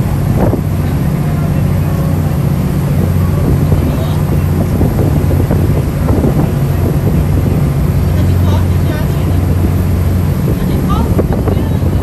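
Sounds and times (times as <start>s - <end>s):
ferry engine droning: 0.0s - 12.0s
passengers talking: 0.0s - 12.0s
wind buffeting microphone: 0.0s - 12.0s.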